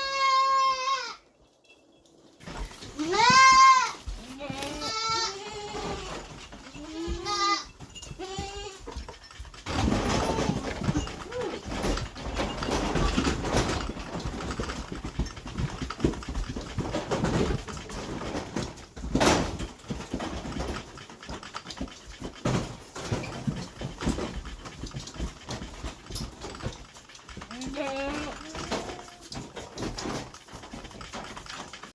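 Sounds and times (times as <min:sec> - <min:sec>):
farm animal call: 0:00.0 - 0:01.3, 0:02.9 - 0:09.2, 0:27.4 - 0:29.4
rustling and clattering: 0:00.0 - 0:31.9.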